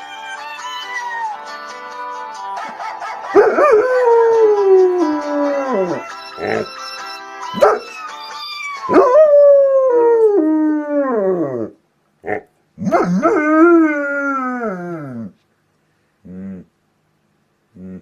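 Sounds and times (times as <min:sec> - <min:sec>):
dog howling: 0:03.3 - 0:06.7
phone ringtone: 0:05.8 - 0:08.9
dog yipping: 0:07.5 - 0:09.0.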